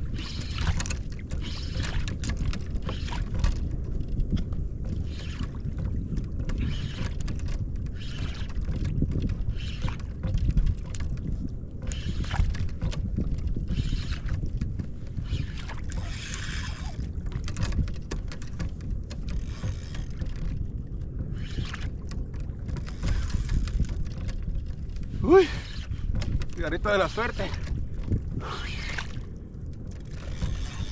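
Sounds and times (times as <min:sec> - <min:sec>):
water splashing against hull: 0:00.0 - 0:30.9
wind buffeting microphone: 0:00.0 - 0:30.9.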